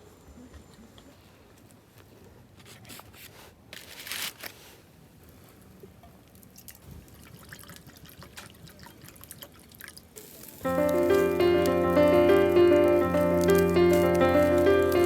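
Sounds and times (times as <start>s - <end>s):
liquid dripping and trickling: 6.2s - 10.6s
splash: 6.5s - 10.6s.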